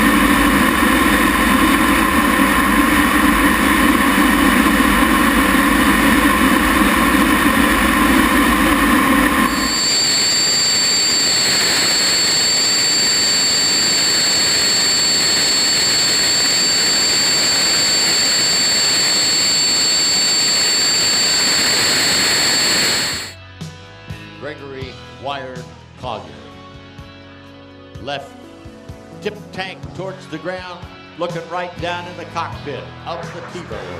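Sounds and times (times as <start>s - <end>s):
high-pitched whines: 0.0s - 23.4s
jet engine roar: 0.0s - 23.4s.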